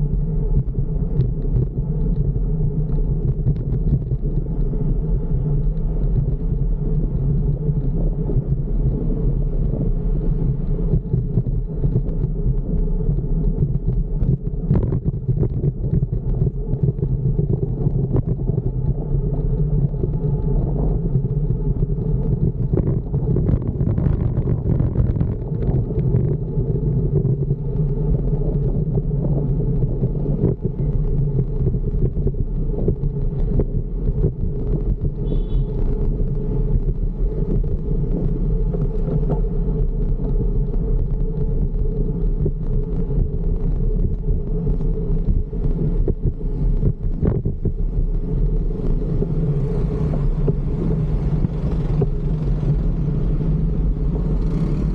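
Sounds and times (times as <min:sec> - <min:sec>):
road noise: 0:00.0 - 0:54.9
wind on microphone: 0:00.0 - 0:54.9.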